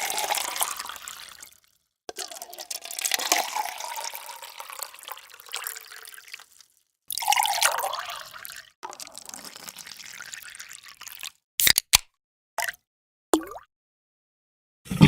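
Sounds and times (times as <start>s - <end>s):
water pouring and splashing: 0.0s - 11.4s.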